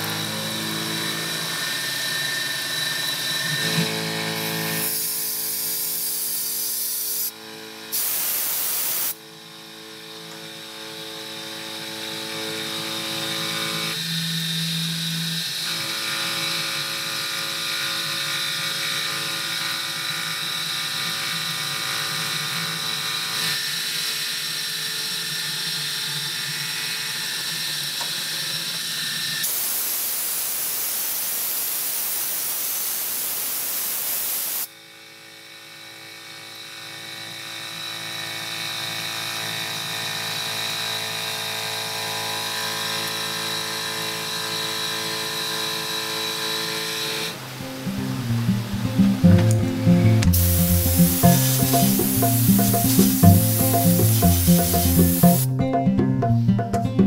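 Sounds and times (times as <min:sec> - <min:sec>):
milling machine hum and whine: 0:00.0 - 0:08.1, 0:09.1 - 0:31.0
hissing noise: 0:07.9 - 0:09.2, 0:29.5 - 0:34.7, 0:47.8 - 0:55.5.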